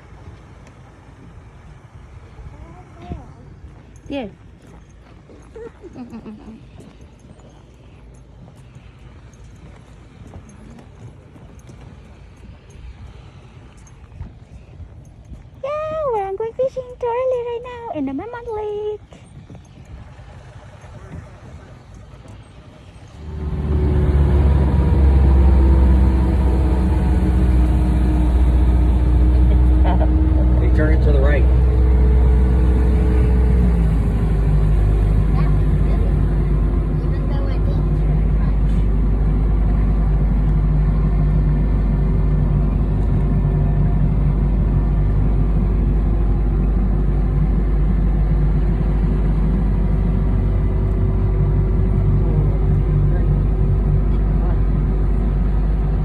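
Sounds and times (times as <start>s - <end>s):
boat motor running: 19.9s - 56.0s.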